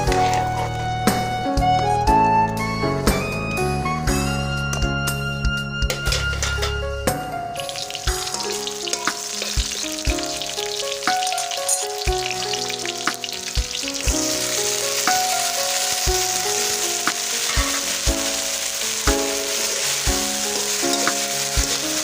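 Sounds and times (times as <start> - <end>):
background music with beat: 0.0 - 22.0
food sizzling in hot oil: 7.5 - 22.0.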